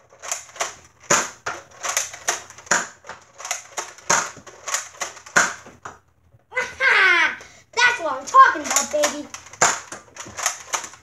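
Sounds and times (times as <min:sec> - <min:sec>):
toy dart blaster firing rapidly: 0:00.2 - 0:05.7, 0:08.2 - 0:11.0.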